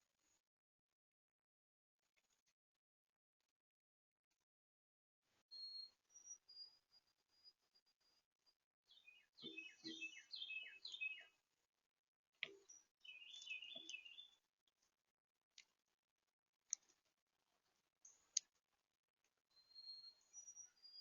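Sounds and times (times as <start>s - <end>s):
small bird chirping: 8.9s - 11.4s, 12.4s - 14.4s, 19.5s - 21.0s.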